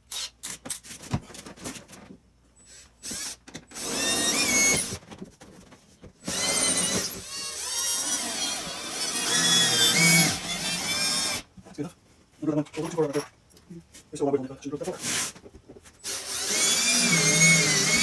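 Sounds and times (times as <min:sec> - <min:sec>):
power drill boring fiberglass: 0:02.7 - 0:04.9, 0:06.2 - 0:11.4, 0:16.0 - 0:18.0.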